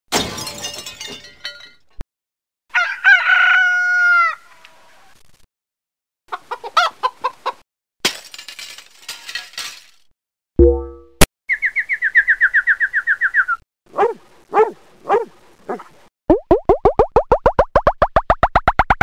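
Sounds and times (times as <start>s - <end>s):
rooster crowing: 2.7s - 4.7s.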